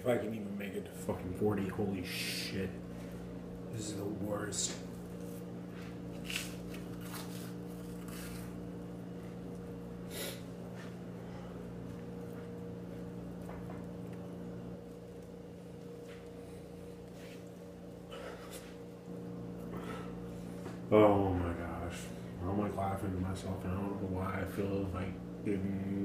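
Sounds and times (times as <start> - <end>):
low electrical hum: 0.0 - 26.0
man chewing toast: 4.9 - 20.7
man breathing: 19.7 - 20.8.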